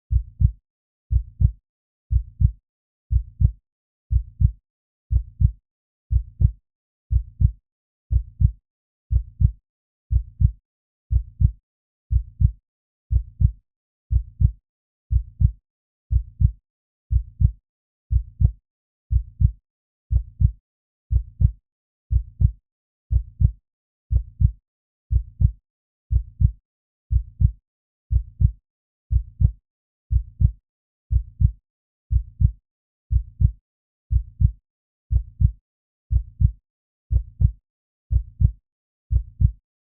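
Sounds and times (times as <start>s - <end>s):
heartbeat thumps: 0.1s - 0.5s, 1.1s - 1.5s, 2.1s - 2.5s, 3.1s - 3.5s, 4.1s - 4.5s, 5.1s - 5.5s, 6.1s - 6.5s, 7.1s - 7.5s, 8.1s - 8.5s, 9.1s - 9.5s, 10.1s - 10.5s, 11.1s - 11.5s, 12.1s - 12.5s, 13.1s - 13.5s, 14.1s - 14.5s, 15.1s - 15.5s, 16.1s - 16.5s, 17.1s - 17.5s, 18.1s - 18.5s, 19.1s - 19.5s, 20.1s - 20.5s, 21.1s - 21.5s, 22.1s - 22.5s, 23.1s - 23.5s, 24.1s - 24.5s, 25.1s - 25.5s, 26.1s - 26.5s, 27.1s - 27.5s, 28.1s - 28.5s, 29.1s - 29.5s, 30.1s - 30.5s, 31.1s - 31.5s, 32.1s - 32.5s, 33.1s - 33.5s, 34.1s - 35.5s, 36.1s - 37.5s, 38.1s - 38.5s, 39.1s - 39.5s.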